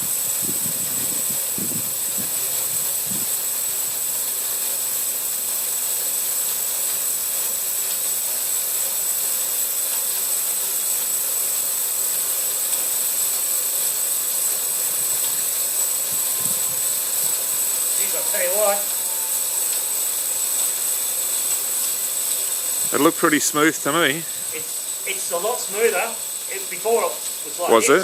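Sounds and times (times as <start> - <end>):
bandsaw blade whining: 0.0 - 28.0.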